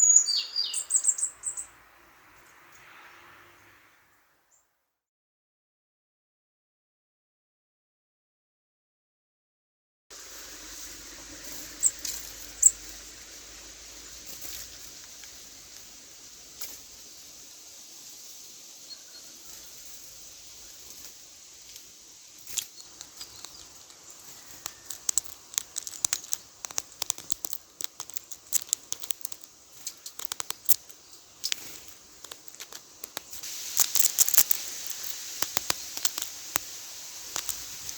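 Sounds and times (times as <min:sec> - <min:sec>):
scratches: 0:20.8 - 0:37.9
bird pecking and tapping at microphone: 0:23.0 - 0:30.8.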